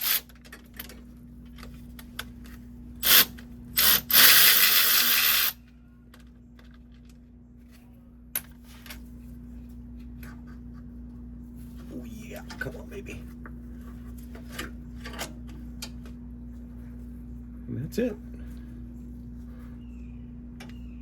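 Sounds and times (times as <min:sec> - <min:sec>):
power tool bursts: 0:03.0 - 0:05.6.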